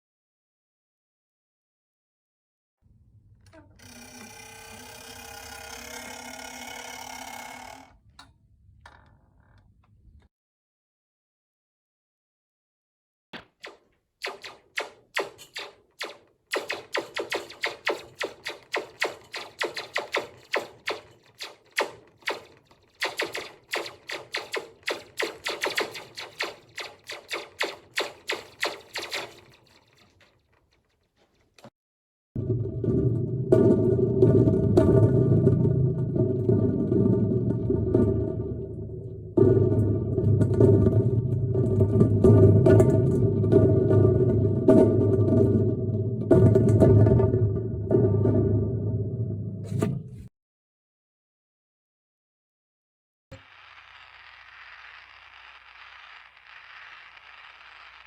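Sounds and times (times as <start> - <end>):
small mechanism whirring: 3.7 - 8.0, 13.6 - 30.8, 53.3 - 58.0
sharp clicks: 13.4 - 30.2.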